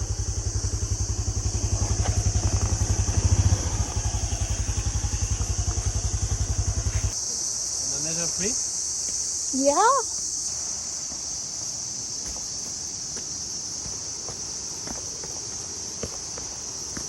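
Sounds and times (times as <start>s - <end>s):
motorcycle engine idling: 0.0s - 7.2s
insects droning: 0.0s - 17.0s.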